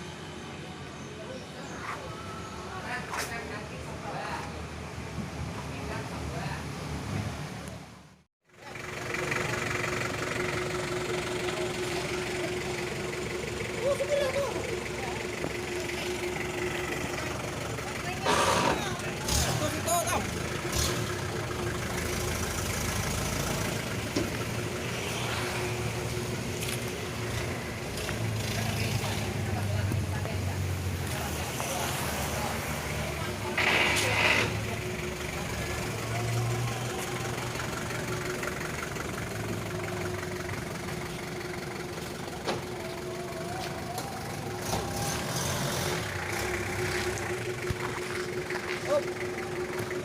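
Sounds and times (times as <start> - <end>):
outboard engine running: 8.7 - 19.4, 33.4 - 45.1, 46.0 - 50.0
outboard motor running: 46.1 - 50.0.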